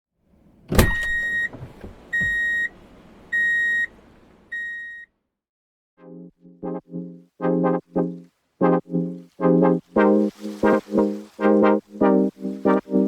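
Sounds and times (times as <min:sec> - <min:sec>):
brass-like music: 0:06.0 - 0:13.0.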